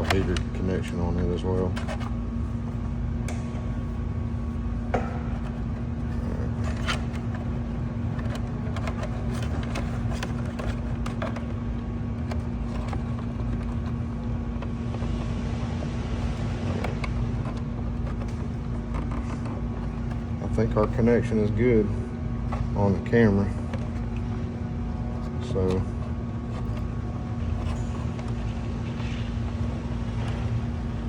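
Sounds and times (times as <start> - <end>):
plastic parts clicking: 0.0 - 1.0, 1.6 - 2.1, 4.9 - 11.6, 12.2 - 15.1, 16.2 - 21.4, 22.4 - 31.0
low hum with steady tone: 0.0 - 31.0.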